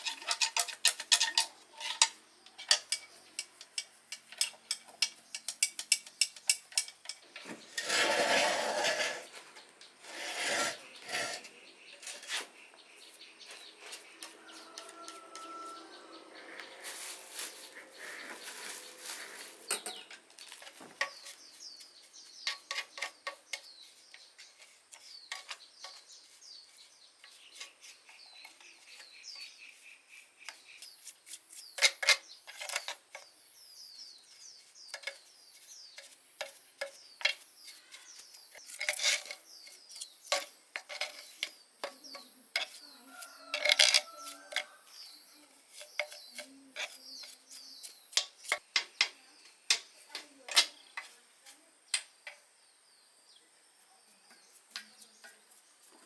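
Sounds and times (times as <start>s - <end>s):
small birds chirping: 0.0s - 56.0s.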